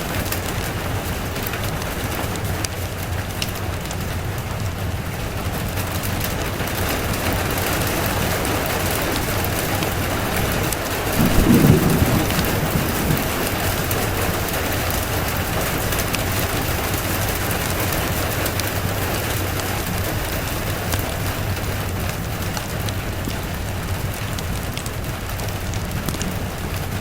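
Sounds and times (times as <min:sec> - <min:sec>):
steady rain: 0:00.0 - 0:27.0
low roll of thunder: 0:08.2 - 0:18.6.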